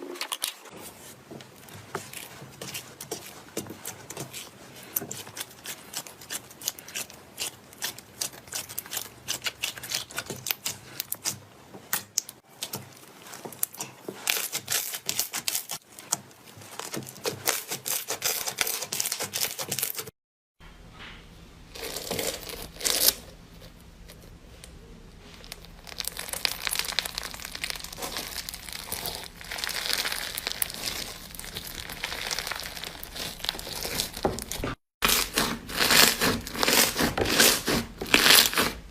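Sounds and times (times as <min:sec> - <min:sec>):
slime squeezed crackling and popping: 0:25.4 - 0:38.7.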